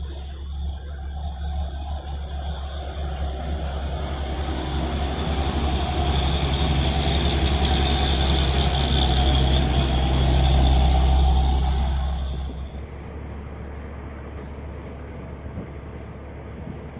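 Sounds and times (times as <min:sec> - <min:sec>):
high whine: 0:00.0 - 0:13.1
heavy truck engine rumbling: 0:00.0 - 0:16.9.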